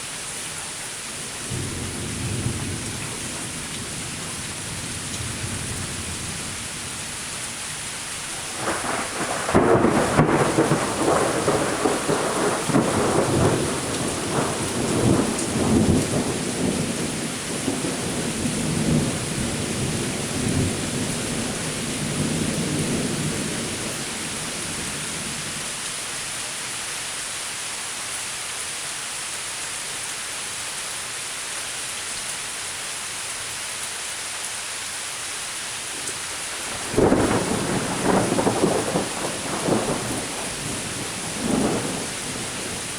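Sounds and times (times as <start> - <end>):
steady rain: 0.0 - 42.9
thunder rumbling: 8.3 - 25.6, 36.5 - 42.9.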